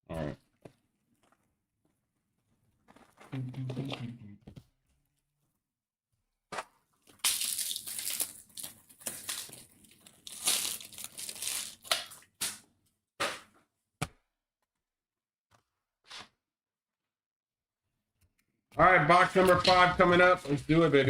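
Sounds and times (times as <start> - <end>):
plastic wrapping crinkling: 7.0 - 12.3.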